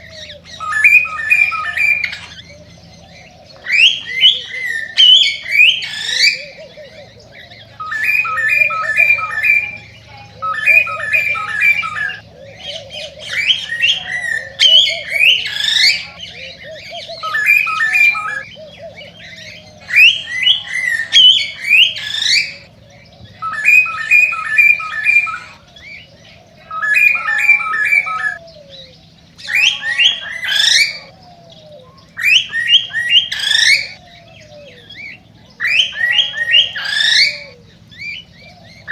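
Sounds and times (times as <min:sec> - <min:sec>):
cockatiel whistling and chirping: 0:00.5 - 0:02.4, 0:07.8 - 0:12.2, 0:17.1 - 0:18.5, 0:19.8 - 0:22.7, 0:23.4 - 0:25.7, 0:26.7 - 0:28.4, 0:32.2 - 0:34.0, 0:35.0 - 0:38.2.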